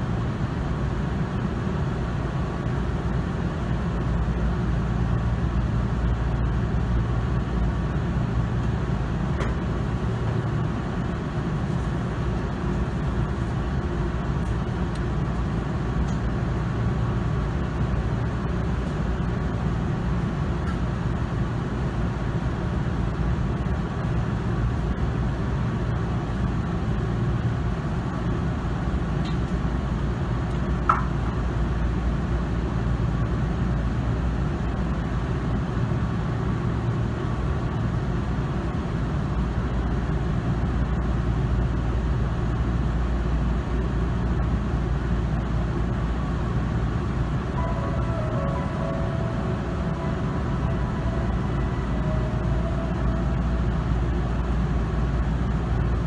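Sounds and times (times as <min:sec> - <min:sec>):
faint steady whine: 0:00.0 - 0:56.0
train equipment hum and whir: 0:00.0 - 0:56.0.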